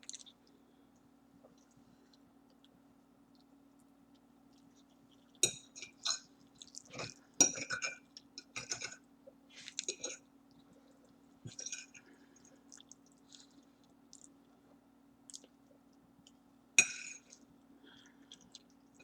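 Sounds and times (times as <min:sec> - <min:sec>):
cutlery clinking on a plate: 0:06.9 - 0:09.0.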